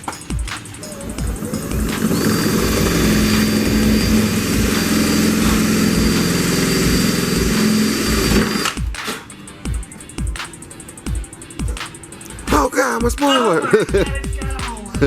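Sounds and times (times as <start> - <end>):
electric drill running under load: 1.0 - 8.8.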